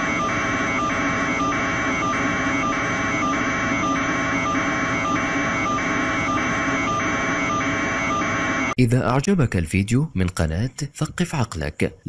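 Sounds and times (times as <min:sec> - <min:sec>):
electronic alarm beeping: 0:00.0 - 0:08.8.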